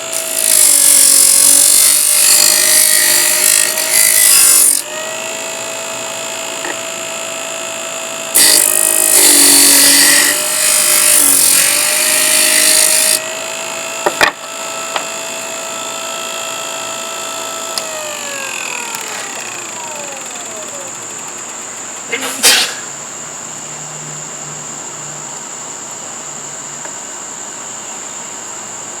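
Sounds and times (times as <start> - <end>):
sander winding down whine: 0.0 - 22.6
disc sander grinding wood: 0.0 - 22.8.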